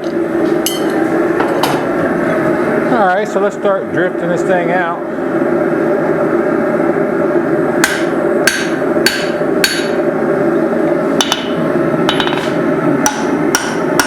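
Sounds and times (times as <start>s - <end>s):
hammer striking hot steel: 0.7s - 1.9s, 7.8s - 10.0s, 11.2s - 14.0s.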